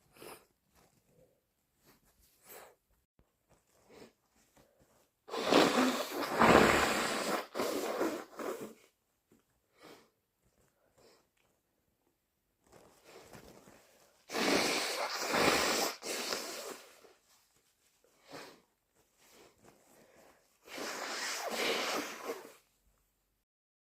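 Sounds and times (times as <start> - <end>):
sniffs and breaths: 0.0 - 2.8, 3.5 - 9.0, 9.7 - 11.6, 12.9 - 22.7
person blowing nose: 5.3 - 8.9, 14.3 - 17.1, 18.2 - 18.6, 19.4 - 22.7.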